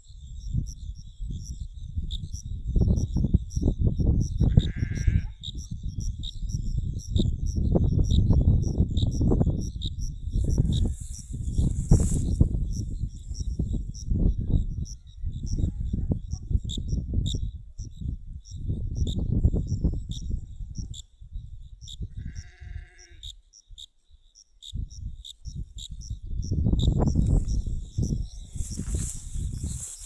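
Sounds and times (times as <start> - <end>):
wind rumbling on microphone: 0.0 - 22.9, 24.7 - 30.0
insects chirping high-pitched: 0.0 - 30.0
short bleat: 4.5 - 5.4, 22.2 - 23.2.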